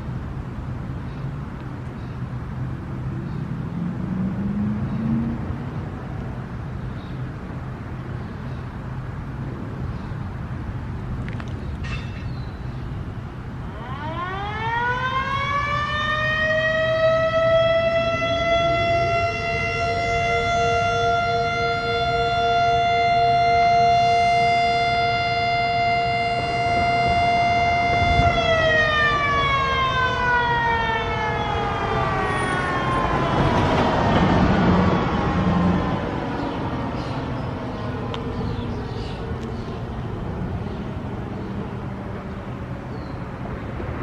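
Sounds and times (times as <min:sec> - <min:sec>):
fainter lower siren tone: 0:13.7 - 0:36.0
civil defense siren: 0:13.7 - 0:42.8.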